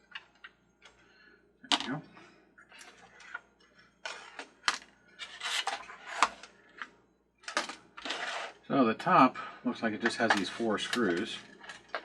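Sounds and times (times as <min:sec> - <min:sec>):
rubbing and scraping on plastic: 0:02.6 - 0:08.7, 0:09.8 - 0:12.0.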